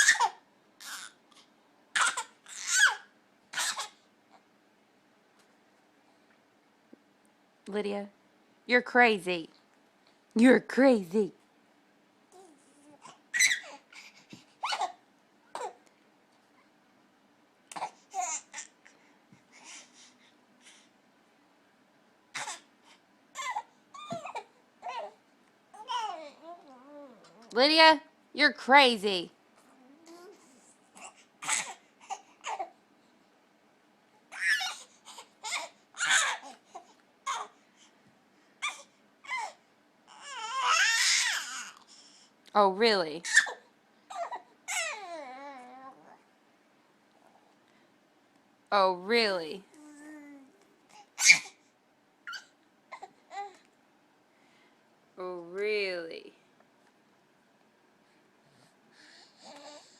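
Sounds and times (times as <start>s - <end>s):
baby squealing and babbling: 0.0s - 1.2s, 2.0s - 4.0s, 12.4s - 14.0s, 14.6s - 15.0s, 17.7s - 18.7s, 23.4s - 25.2s, 25.8s - 27.5s, 31.0s - 32.7s, 34.3s - 36.6s, 38.6s - 41.8s, 43.2s - 46.2s, 49.8s - 51.6s, 52.2s - 53.6s.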